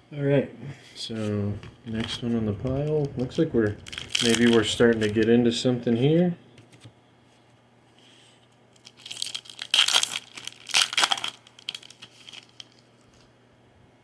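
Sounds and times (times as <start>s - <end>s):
foil wrapper crinkling and tearing: 2.9s - 5.3s, 8.8s - 13.1s.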